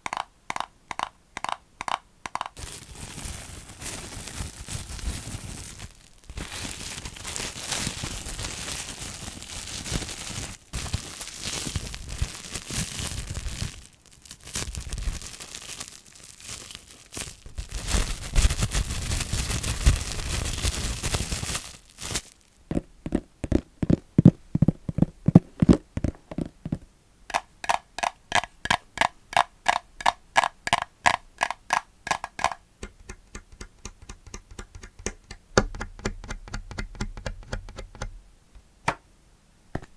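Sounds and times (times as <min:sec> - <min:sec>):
plastic crinkling: 0:02.6 - 0:22.8.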